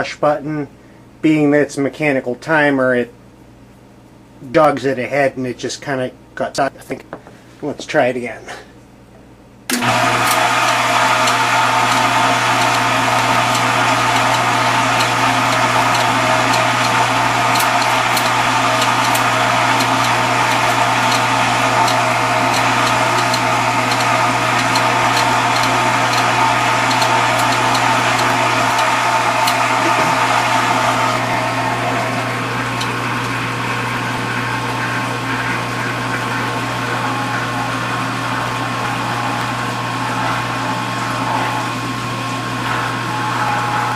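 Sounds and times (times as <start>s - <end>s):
dishwasher motor humming: 9.7s - 43.9s
water rushing in dishwasher: 9.8s - 43.9s.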